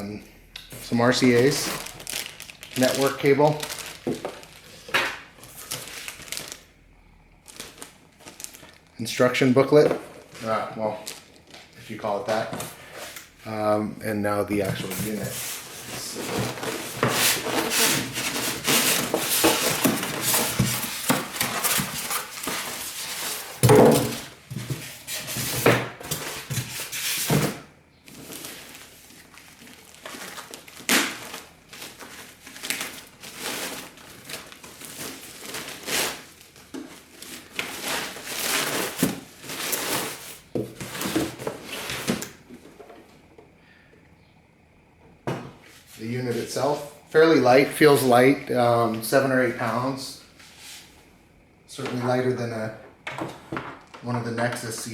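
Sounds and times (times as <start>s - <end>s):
cardboard and packing rustling: 0.7s - 6.7s, 7.4s - 13.4s, 14.5s - 43.3s
handling knocks and thumps: 14.6s - 27.7s.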